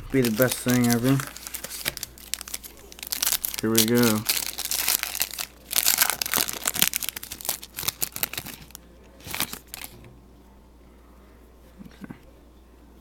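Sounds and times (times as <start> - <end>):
plastic wrapping tearing: 0.1 - 10.0.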